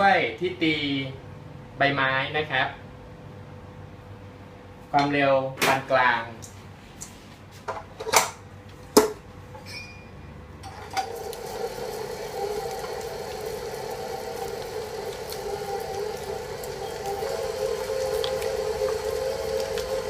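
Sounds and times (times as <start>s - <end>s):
electric stand mixer running: 10.7s - 20.0s.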